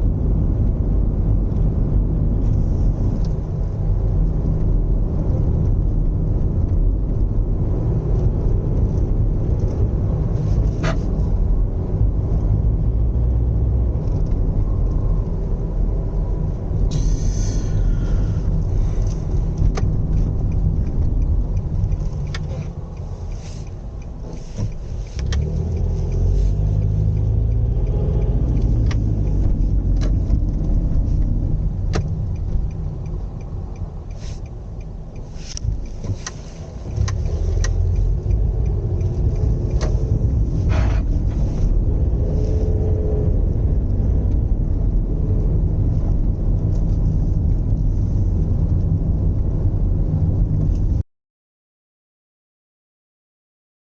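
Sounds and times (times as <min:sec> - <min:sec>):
car road rumble: 0:00.0 - 0:51.0
harsh scraping noise: 0:39.9 - 0:42.6.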